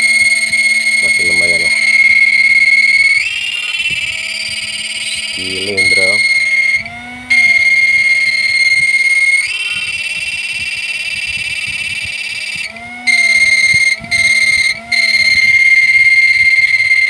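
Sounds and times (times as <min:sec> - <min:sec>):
high-pitched electronic whine: 0:00.0 - 0:17.0.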